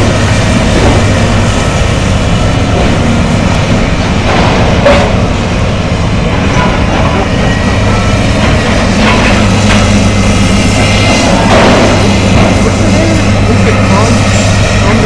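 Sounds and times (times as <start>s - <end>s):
excavator diesel engine running: 0.0s - 15.0s
debris crashing and clattering: 2.8s - 10.2s, 10.9s - 12.8s.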